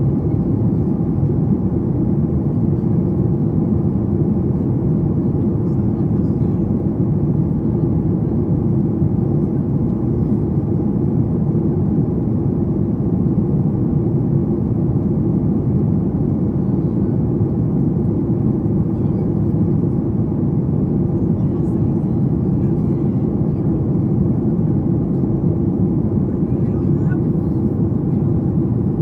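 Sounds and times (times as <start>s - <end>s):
airplane cabin rumble: 0.0s - 29.0s.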